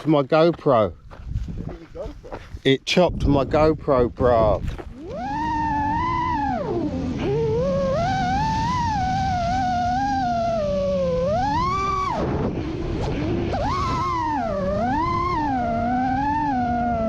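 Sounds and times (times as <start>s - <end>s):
drone motors whining: 3.6s - 17.0s
rush of air: 10.7s - 14.4s.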